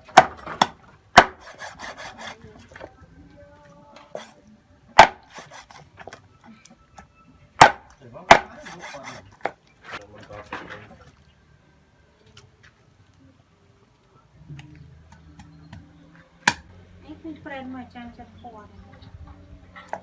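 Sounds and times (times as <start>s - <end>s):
knife chopping on wooden board: 0.1s - 2.4s, 5.0s - 5.8s, 7.6s - 9.5s
scraping and rustling: 8.4s - 11.2s.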